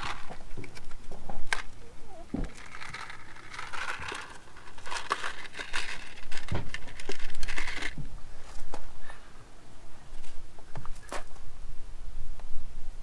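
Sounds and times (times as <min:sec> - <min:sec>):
crinkling and scraping handling noise: 0:00.0 - 0:08.9.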